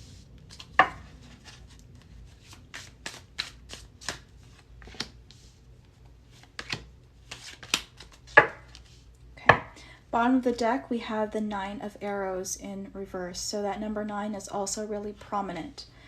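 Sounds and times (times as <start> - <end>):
cards shuffled and slapped: 0.4 - 5.4, 6.3 - 9.0.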